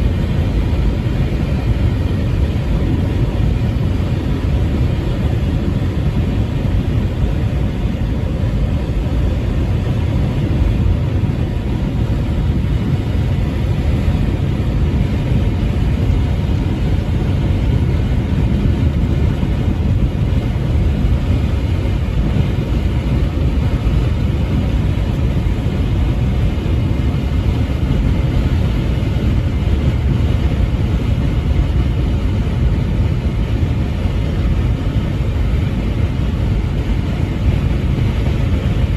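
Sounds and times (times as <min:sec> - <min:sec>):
truck engine and road rumble: 0:00.0 - 0:38.9.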